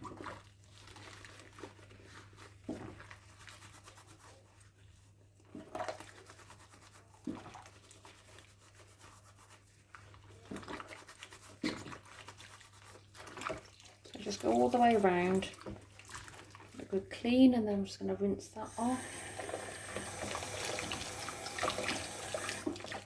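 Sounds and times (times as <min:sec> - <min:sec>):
sponge scrubbing plastic: 0:00.0 - 0:17.1, 0:18.6 - 0:23.0
light knocks and splashes: 0:13.2 - 0:14.2, 0:14.8 - 0:16.9.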